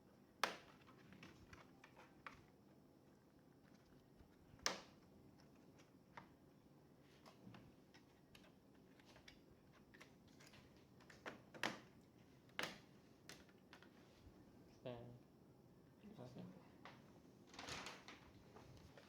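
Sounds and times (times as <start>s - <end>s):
small clicks and taps of parts: 7.2s - 14.0s.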